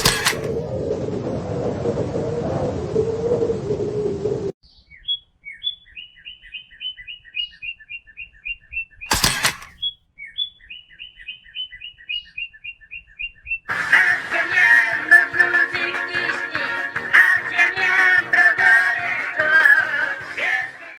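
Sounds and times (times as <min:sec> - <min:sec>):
bird-like chirping: 0:04.6 - 0:13.7.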